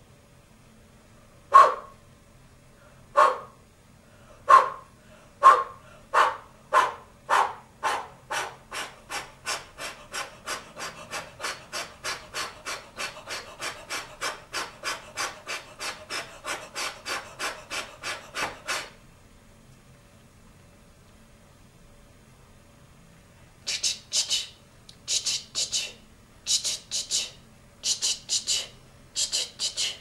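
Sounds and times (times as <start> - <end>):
steam train exhaust chuffs: 7.3 - 19.0, 23.7 - 24.5, 25.1 - 30.0.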